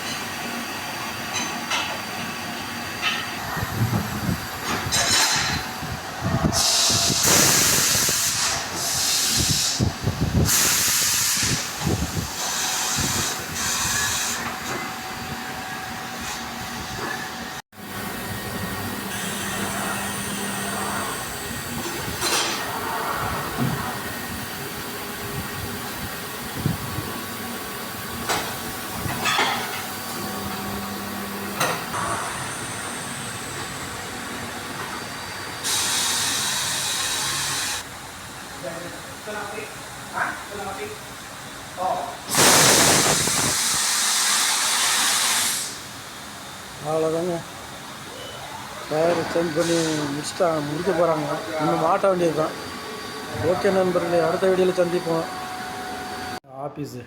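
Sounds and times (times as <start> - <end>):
workshop noise: 0.0 - 57.0
compressed air blasts: 6.4 - 14.5, 42.3 - 46.0, 49.6 - 50.4.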